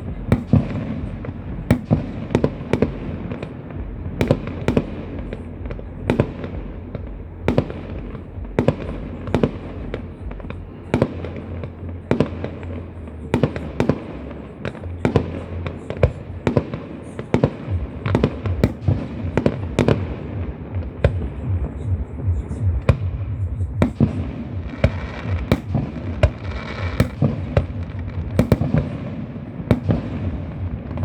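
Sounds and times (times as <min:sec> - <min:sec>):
fireworks bangs: 0:00.0 - 0:31.0
steady low hum: 0:00.0 - 0:31.0.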